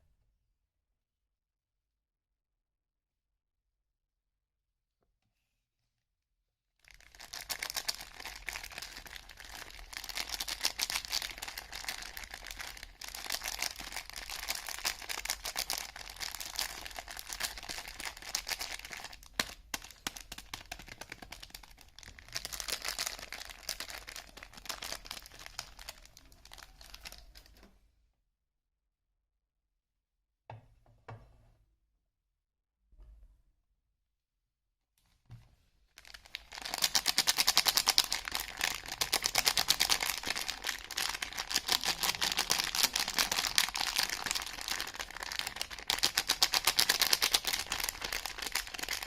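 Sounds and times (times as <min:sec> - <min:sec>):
packaging crinkling: 0:06.8 - 0:27.6, 0:36.0 - 0:49.0.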